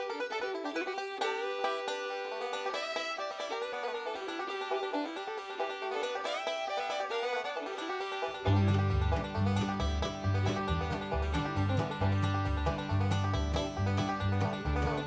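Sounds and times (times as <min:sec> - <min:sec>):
bluegrass plucked string music: 0:00.0 - 0:15.0
bass line: 0:08.4 - 0:15.0.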